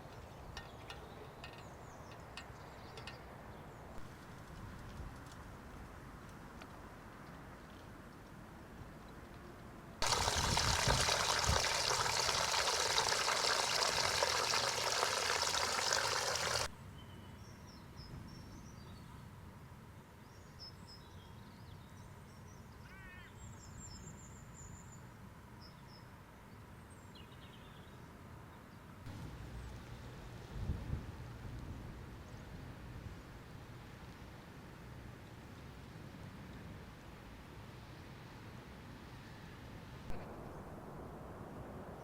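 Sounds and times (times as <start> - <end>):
loud rush of water: 10.0 - 16.7.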